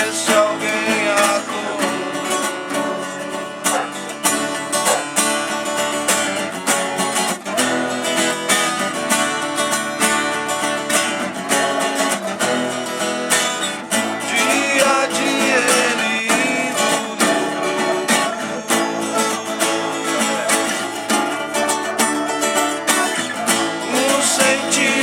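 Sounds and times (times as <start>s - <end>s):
strummed acoustic guitar: 0.0s - 25.0s.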